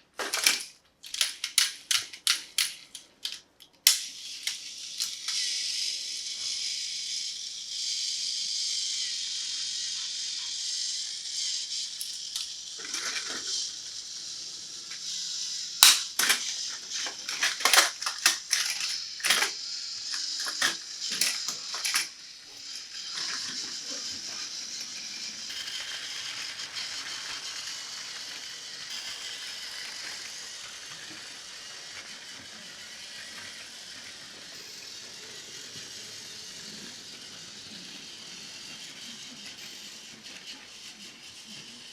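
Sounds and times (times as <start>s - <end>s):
plastic toys clattering: 0.0s - 5.4s, 12.0s - 13.8s, 15.8s - 37.8s
high whir: 4.0s - 41.9s.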